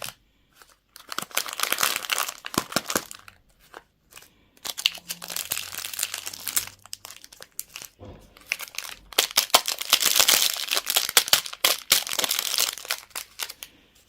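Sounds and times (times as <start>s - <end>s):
candy wrapper crinkling: 0.0s - 13.7s.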